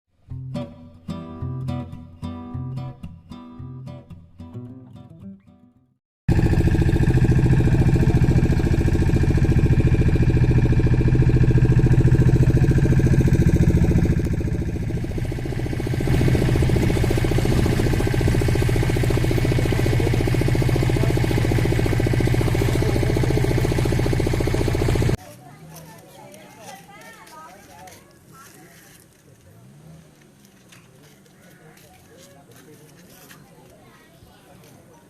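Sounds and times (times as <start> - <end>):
vehicle engine running: 6.3 - 25.2.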